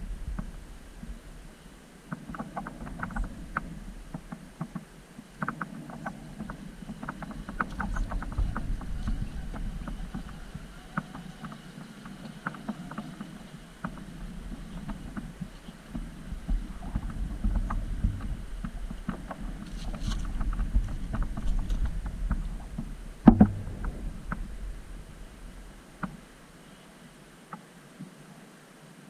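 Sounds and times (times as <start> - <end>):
low rumbling background: 13.4 - 26.6.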